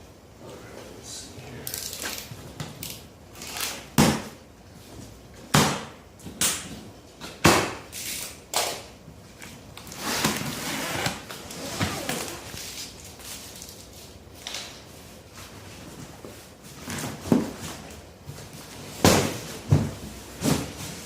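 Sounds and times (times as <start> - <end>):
cardboard rustling and scraping: 9.9 - 12.9.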